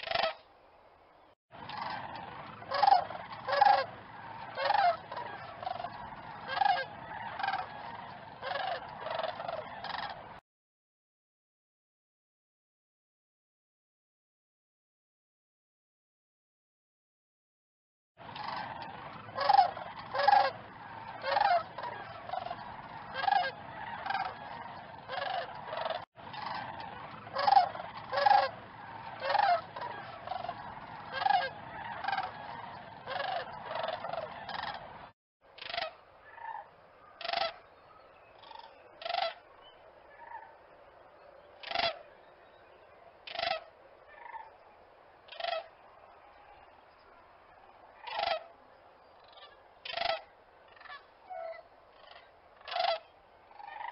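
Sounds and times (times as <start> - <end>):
cranes honking calls: 0.0 - 0.4, 1.6 - 10.4, 18.2 - 40.6, 41.5 - 42.2, 43.2 - 44.6, 45.3 - 46.0, 48.0 - 48.6, 49.2 - 53.9.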